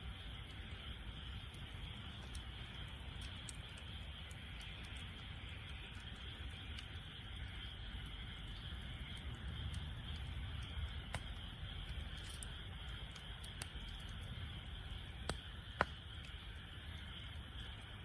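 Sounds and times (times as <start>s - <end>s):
fire crackles and pops: 0.0s - 18.0s
wood fire rumbling: 0.6s - 17.8s.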